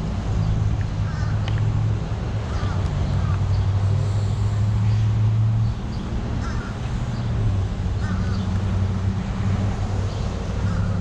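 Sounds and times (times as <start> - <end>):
crow cawing: 1.0 - 1.5, 2.5 - 3.4, 6.4 - 6.9, 7.9 - 8.5, 10.6 - 11.0.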